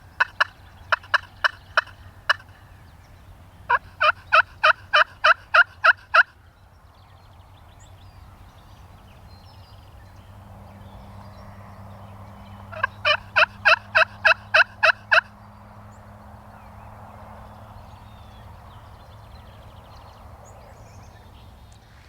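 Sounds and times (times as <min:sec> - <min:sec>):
wild turkey yelping: 0:00.2 - 0:02.6, 0:03.7 - 0:06.3, 0:12.7 - 0:15.3.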